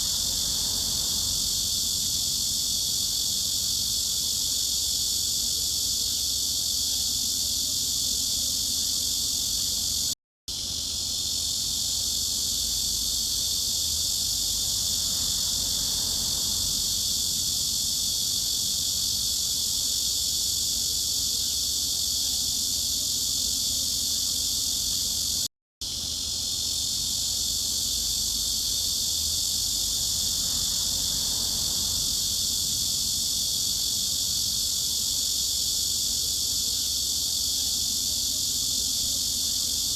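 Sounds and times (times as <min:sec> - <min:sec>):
cicada chorus buzzing: 0:00.0 - 0:39.9.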